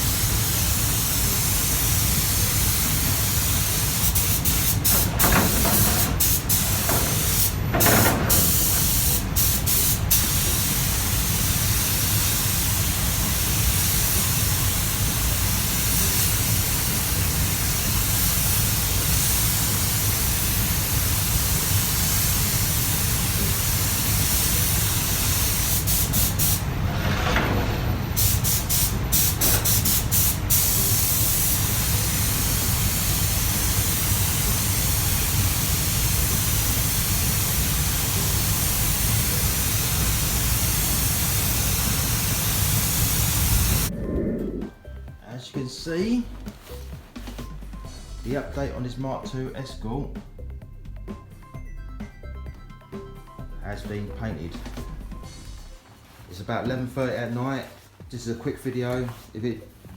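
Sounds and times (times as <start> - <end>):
spray gun hissing: 0.0 - 26.7, 28.0 - 43.9.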